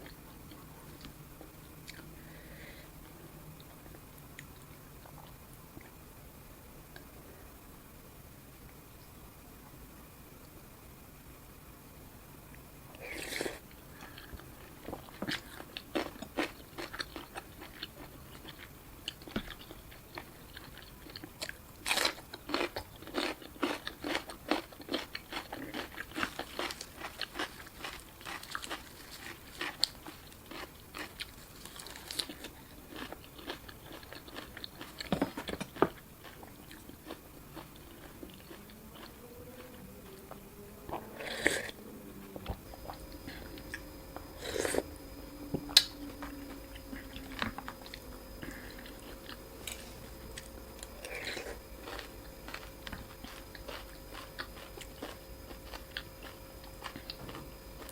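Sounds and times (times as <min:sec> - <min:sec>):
person crunching and chewing food: 0:13.0 - 0:41.8, 0:42.4 - 0:57.9.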